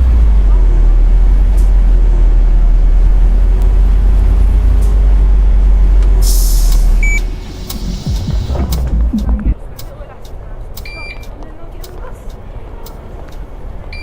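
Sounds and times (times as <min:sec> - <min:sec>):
bus engine and road rumble: 0:00.0 - 0:14.0
compressed air hiss: 0:06.2 - 0:08.8.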